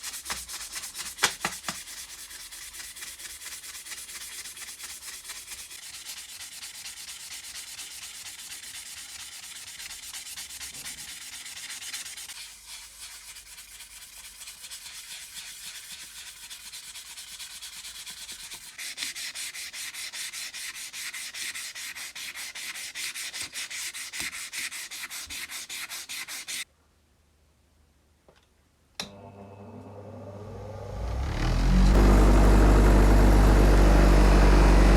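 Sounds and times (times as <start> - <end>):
hand sanding strokes: 0.0 - 26.7.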